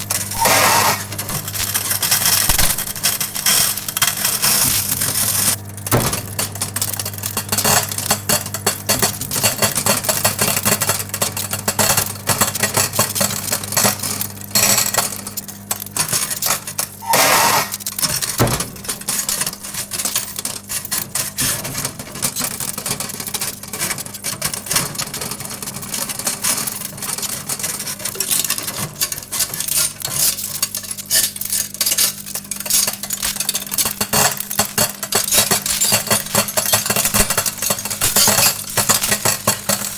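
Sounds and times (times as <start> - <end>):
metal arcing crackling: 0.0 - 7.3, 16.5 - 18.1
microwave oven hum: 0.0 - 39.9.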